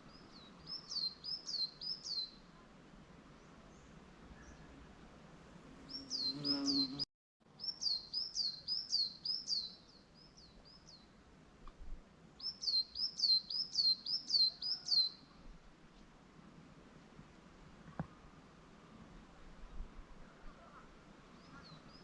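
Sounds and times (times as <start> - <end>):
songbird singing: 0.0 - 2.6, 5.8 - 11.8, 12.4 - 15.5, 20.4 - 22.0.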